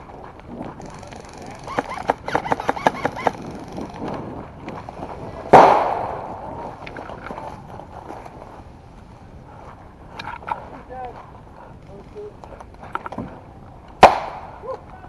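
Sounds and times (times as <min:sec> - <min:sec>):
airsoft gun shots: 0:05.5 - 0:06.2, 0:14.0 - 0:14.5.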